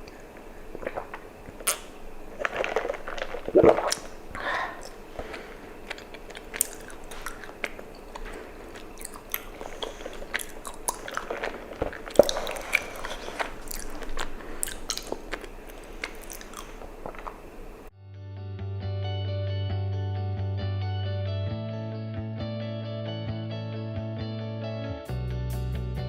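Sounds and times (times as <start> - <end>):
mouth chewing sticky smacks: 0.0 - 17.9.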